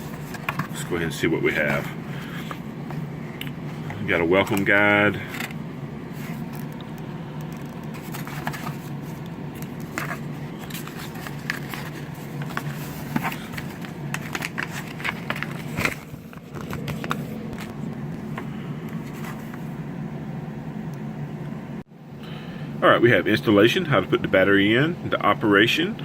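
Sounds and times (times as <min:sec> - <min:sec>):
paper rustling and crinkling: 0:00.0 - 0:03.1, 0:07.5 - 0:19.7
steady low hum: 0:00.0 - 0:26.0.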